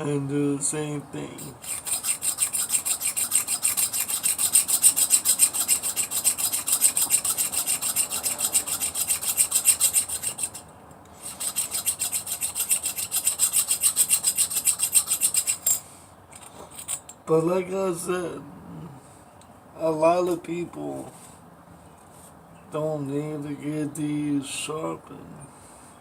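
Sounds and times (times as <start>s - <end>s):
blade rasping on sharpening stone: 1.4s - 10.7s, 11.3s - 15.8s.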